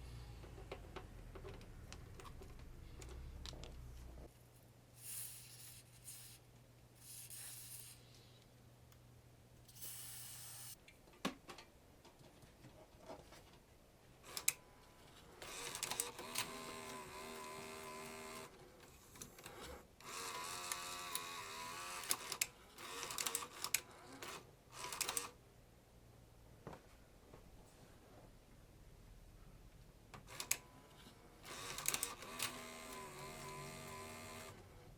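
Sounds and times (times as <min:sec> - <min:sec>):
sharp mechanical clicks: 0:14.3 - 0:14.6, 0:19.2 - 0:25.4, 0:30.3 - 0:30.6, 0:31.4 - 0:34.6
tape mechanism motor whirring: 0:15.4 - 0:18.5, 0:19.4 - 0:25.3, 0:31.4 - 0:34.7.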